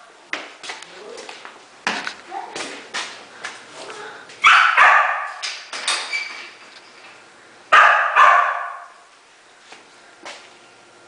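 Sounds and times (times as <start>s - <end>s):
dogs barking: 4.4s - 5.4s, 7.7s - 9.1s.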